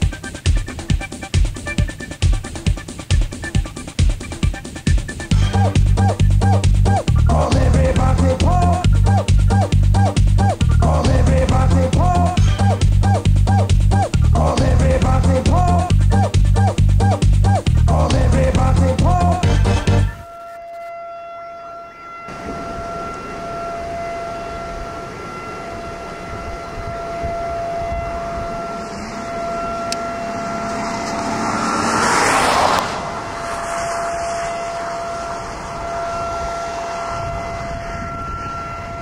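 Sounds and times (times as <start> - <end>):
warning siren wailing: 0.0 - 39.0
rush of noise: 4.7 - 20.2, 25.7 - 39.0
wind noise: 22.3 - 39.0.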